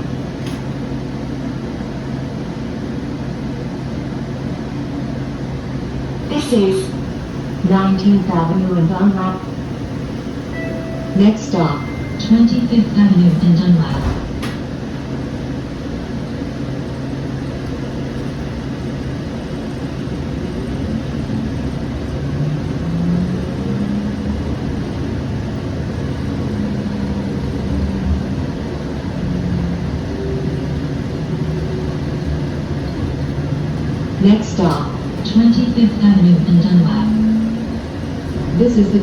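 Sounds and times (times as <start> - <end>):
rail car rumble: 0.0 - 39.0
low motor hum: 15.7 - 38.6.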